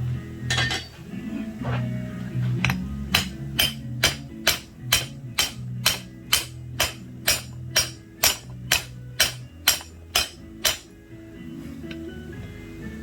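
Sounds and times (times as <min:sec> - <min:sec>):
hammer striking steel anvil: 0:00.5 - 0:01.0, 0:02.6 - 0:10.9.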